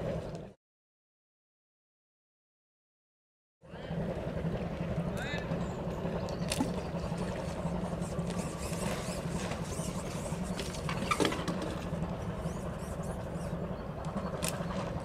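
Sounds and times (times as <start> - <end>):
low engine drone: 0.0 - 0.6, 3.6 - 15.0.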